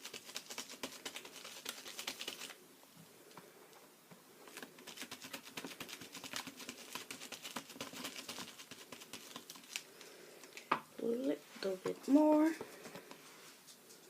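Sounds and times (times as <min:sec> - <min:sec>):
sponge dabbing paint: 0:00.0 - 0:02.6, 0:04.5 - 0:09.8.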